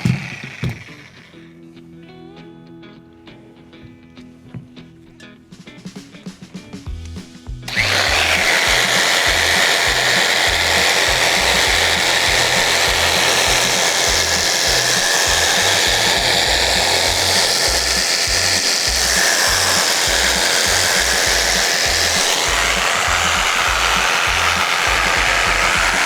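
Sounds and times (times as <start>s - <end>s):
electric saw cutting foam: 0.0s - 1.4s, 7.7s - 26.0s.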